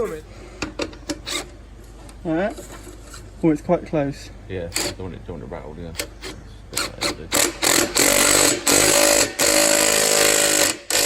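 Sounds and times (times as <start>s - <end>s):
impact gun bursts: 6.8s - 11.0s.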